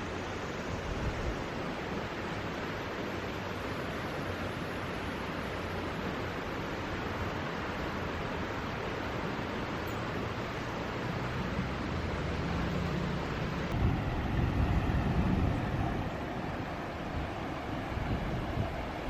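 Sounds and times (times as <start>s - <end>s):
river rushing: 0.0s - 19.0s
wind buffeting microphone: 13.7s - 19.0s.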